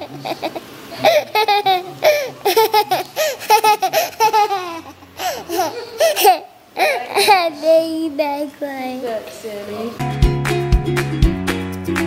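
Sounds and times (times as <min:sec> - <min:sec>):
toddler laughing: 0:00.0 - 0:08.0.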